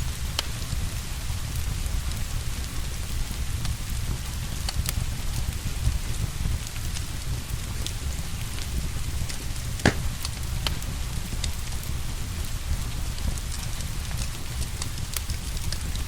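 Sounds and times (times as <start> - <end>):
steady rain: 0.0 - 16.0
fire crackling and popping: 3.6 - 16.0.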